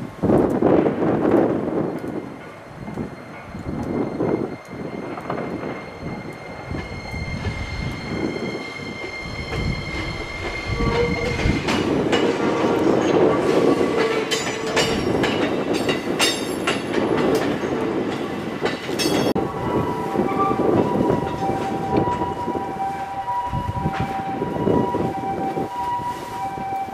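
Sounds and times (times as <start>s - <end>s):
train running past: 0.0s - 26.9s
wheels clicking over rail joints: 9.5s - 19.4s.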